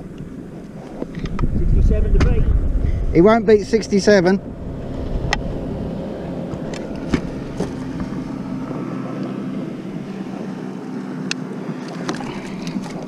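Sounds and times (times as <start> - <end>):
motorboat engine hum: 0.0 - 13.0.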